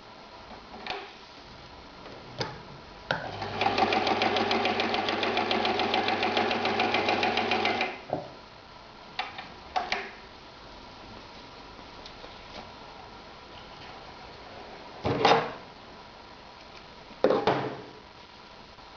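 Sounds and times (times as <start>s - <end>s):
sewing machine stitching: 3.3s - 8.0s.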